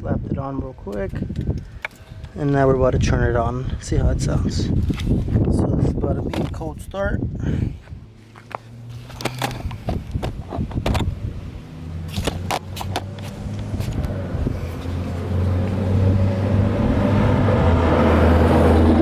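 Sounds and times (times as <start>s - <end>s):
vehicle engine running: 7.8s - 19.0s
sharp clicks and knocks: 8.4s - 11.1s.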